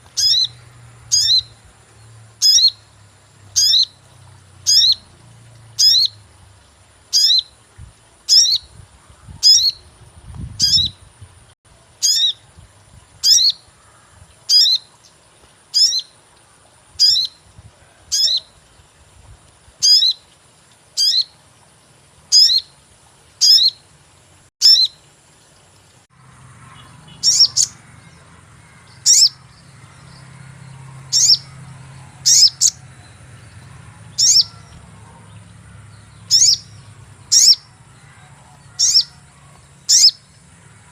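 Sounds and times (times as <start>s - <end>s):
bird chirping sharply: 0.2s - 1.5s, 24.6s - 25.0s, 26.8s - 27.8s, 28.8s - 29.4s, 36.2s - 37.7s.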